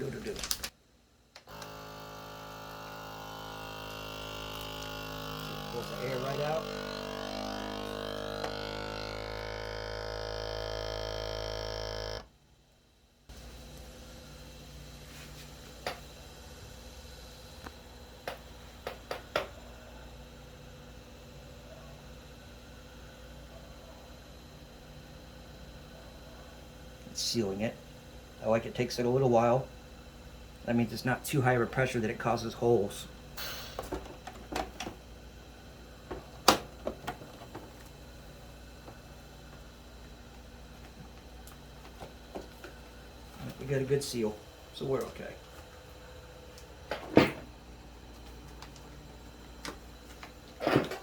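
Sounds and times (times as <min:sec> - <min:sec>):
vacuum sealer pump motor running: 0:01.4 - 0:12.3, 0:32.4 - 0:51.0.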